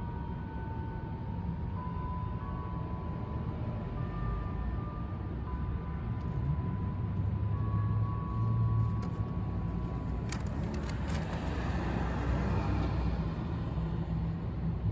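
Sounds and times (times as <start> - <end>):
street traffic rumble: 0.0 - 14.9.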